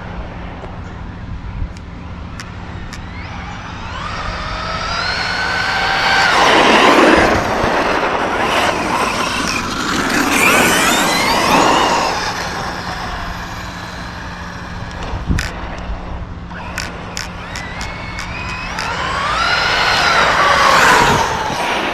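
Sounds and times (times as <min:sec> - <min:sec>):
electric motor whining: 0:01.1 - 0:21.9
sharp clicks: 0:01.7 - 0:03.3, 0:13.8 - 0:15.9, 0:16.5 - 0:21.6.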